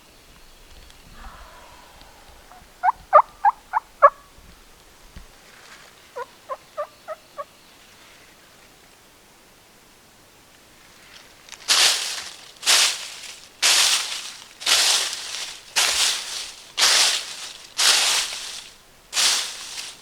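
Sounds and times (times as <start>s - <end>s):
footsteps crunching in dry leaves: 10.8s - 20.0s.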